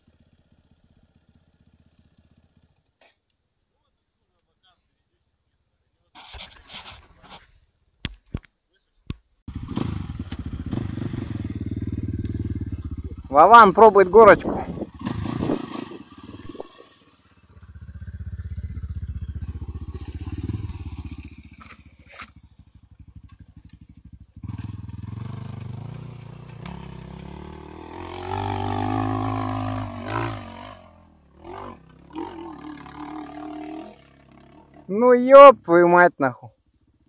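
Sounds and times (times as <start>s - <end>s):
dirt bike engine revving: 9.5s - 35.7s.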